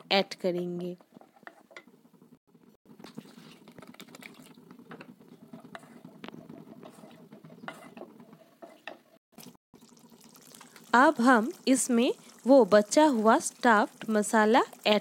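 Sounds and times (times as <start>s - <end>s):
spatula scraping a pan: 5.3s - 9.2s.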